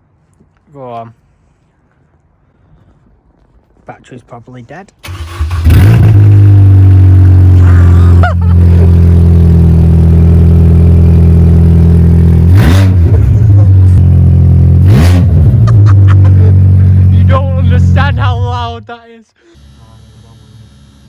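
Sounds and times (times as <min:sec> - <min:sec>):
loud car engine running: 0:05.2 - 0:18.8, 0:19.5 - 0:21.0.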